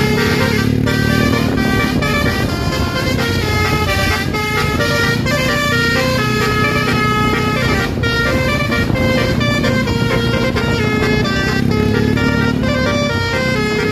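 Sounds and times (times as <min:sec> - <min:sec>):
bus musical horn melody: 0:00.0 - 0:13.9
low rumble: 0:00.5 - 0:13.7.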